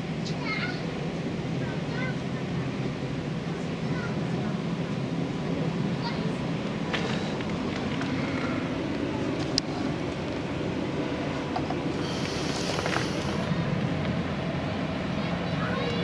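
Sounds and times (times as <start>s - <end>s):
low mechanical hum: 0.0s - 16.0s
brief hiss: 12.0s - 13.5s.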